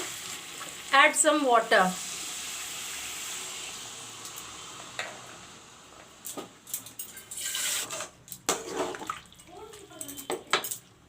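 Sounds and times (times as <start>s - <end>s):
water hissing in a hot pan: 0.0s - 6.2s.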